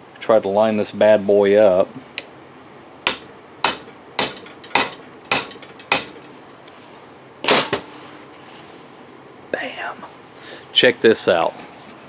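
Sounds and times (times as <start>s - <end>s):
hammer tapping on metal: 3.1s - 6.2s.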